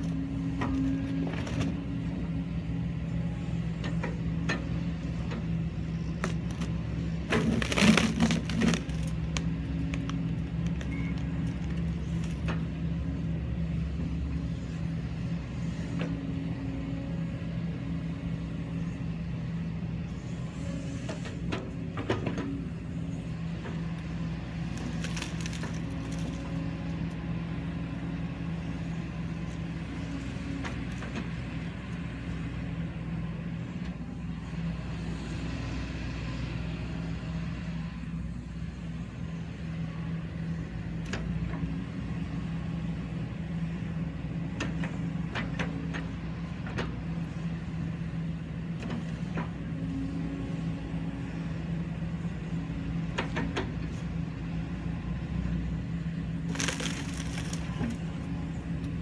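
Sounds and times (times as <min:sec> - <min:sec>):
excavator diesel engine running: 0:00.0 - 0:59.0
wood cracking and splintering: 0:06.2 - 0:12.6, 0:24.6 - 0:26.8, 0:56.5 - 0:58.3.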